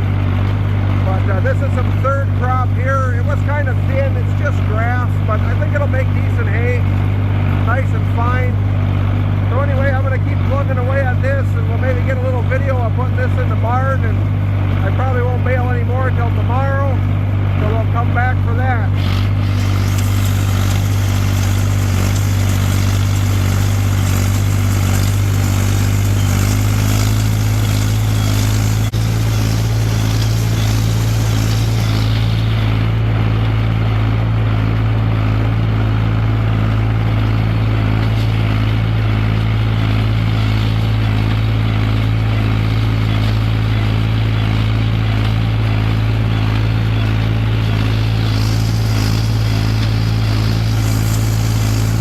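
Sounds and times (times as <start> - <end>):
tractor engine running: 0.0 - 52.0.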